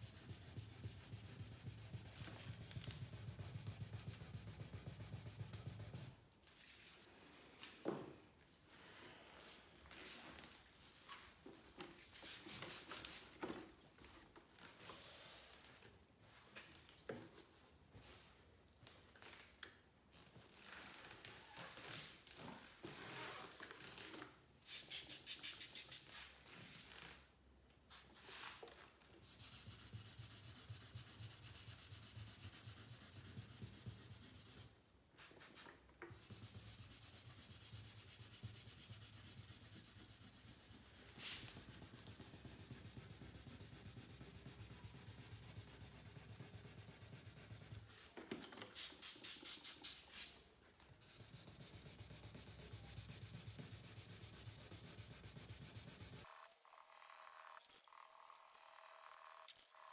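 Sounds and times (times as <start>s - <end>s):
sandpaper rasping on paint: 0.0s - 6.1s, 29.2s - 34.7s, 36.2s - 47.9s, 51.0s - 56.3s.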